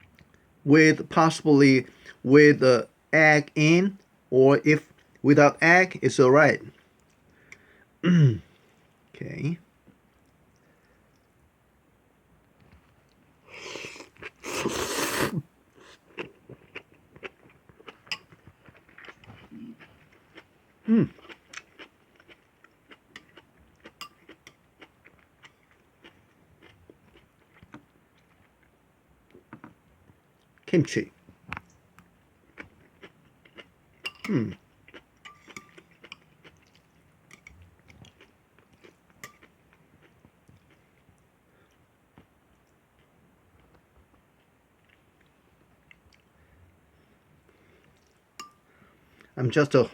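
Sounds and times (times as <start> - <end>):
soft clicking chewing: 6.7 - 7.7, 9.8 - 11.5, 12.4 - 13.3, 16.1 - 20.5, 21.1 - 49.4
noisy mouthfuls of noodles: 13.4 - 16.0.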